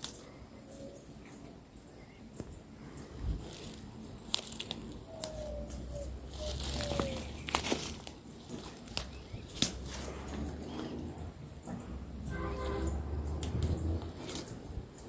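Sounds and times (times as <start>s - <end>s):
dry leaves and twigs crunching: 3.4s - 11.0s
twigs snapping: 3.5s - 10.6s.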